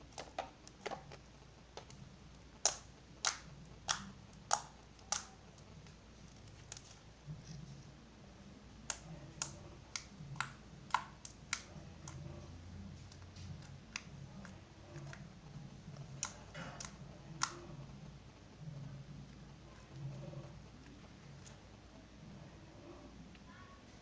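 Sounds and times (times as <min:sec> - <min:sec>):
slime clicking and popping: 0:00.1 - 0:07.0, 0:08.8 - 0:12.4, 0:13.0 - 0:18.1.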